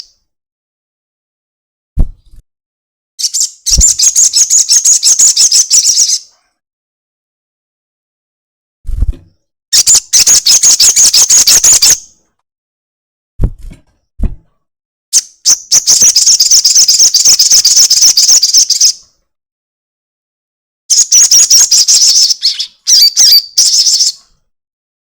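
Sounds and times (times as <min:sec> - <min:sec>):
low thumps: 0:02.0 - 0:02.4, 0:13.4 - 0:14.5.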